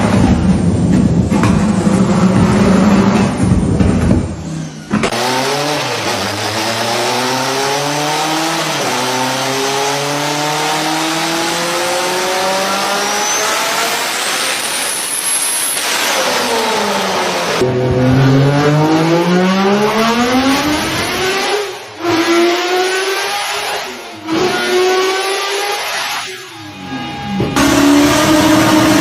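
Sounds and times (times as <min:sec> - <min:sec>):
car engine revving at full throttle: 0:05.0 - 0:26.4, 0:27.4 - 0:29.0
high turbo whistle: 0:12.4 - 0:16.6.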